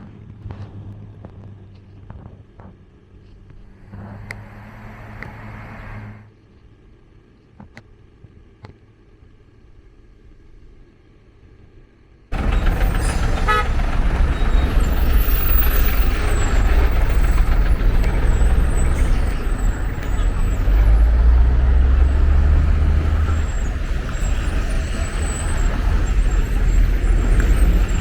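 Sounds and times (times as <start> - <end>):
heavy road traffic rumble: 0.0 - 7.4, 12.3 - 28.0
heavy vehicle passing: 3.6 - 6.3, 12.3 - 28.0
vehicle horn tooting: 12.4 - 16.6.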